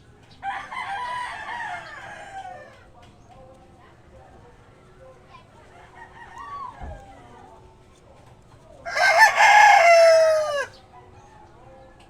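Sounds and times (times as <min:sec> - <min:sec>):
rooster crowing: 0:00.4 - 0:02.8, 0:08.9 - 0:10.8.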